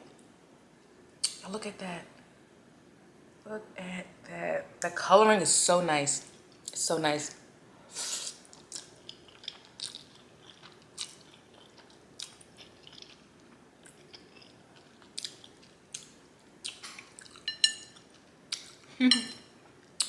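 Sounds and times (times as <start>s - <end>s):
person chewing noodles: 8.5s - 18.9s.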